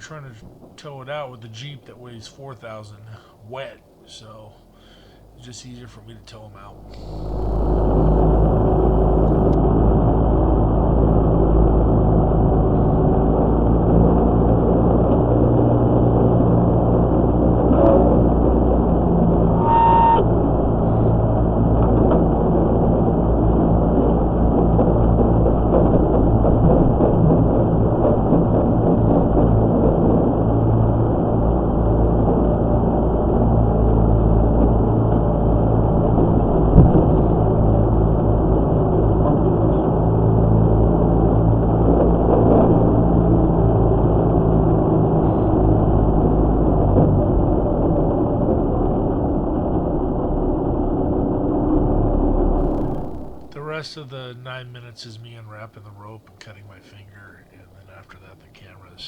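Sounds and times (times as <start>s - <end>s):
truck engine droning: 6.6s - 9.6s, 52.6s - 54.1s.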